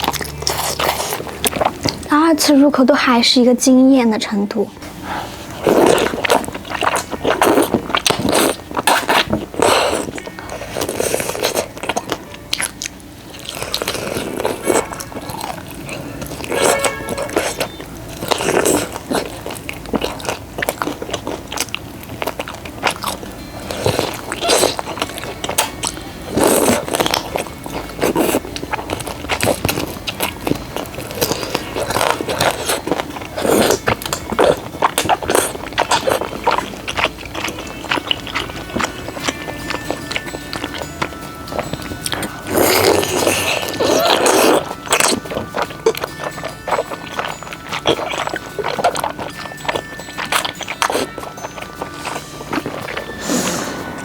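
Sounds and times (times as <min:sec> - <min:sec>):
biting and chewing food: 0:00.0 - 0:02.6, 0:04.8 - 0:54.0
background music: 0:09.6 - 0:20.6, 0:22.5 - 0:54.0.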